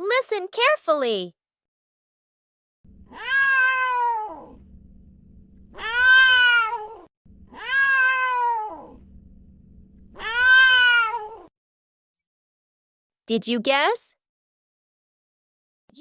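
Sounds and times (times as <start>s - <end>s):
cat meowing: 3.1s - 4.6s, 5.7s - 9.0s, 10.2s - 11.5s.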